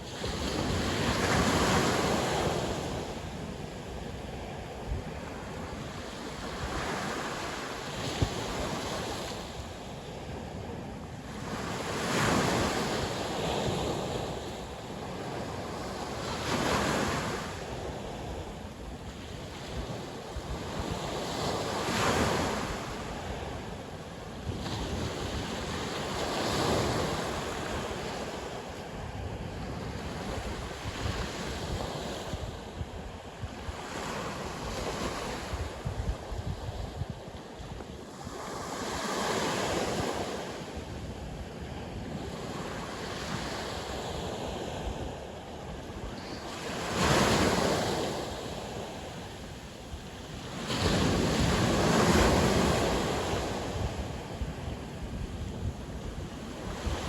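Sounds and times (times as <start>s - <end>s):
sea waves breaking on shore: 0.0s - 57.0s
wind buffeting microphone: 0.0s - 57.0s.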